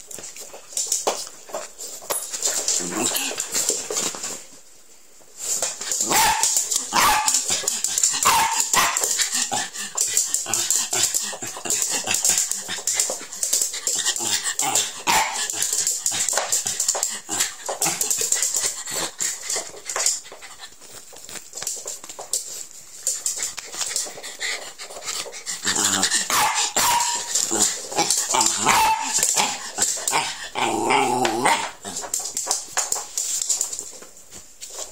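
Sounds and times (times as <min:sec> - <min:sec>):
dog barking and yipping: 0:06.0 - 0:09.2, 0:15.0 - 0:15.5, 0:26.2 - 0:27.6, 0:28.2 - 0:29.6.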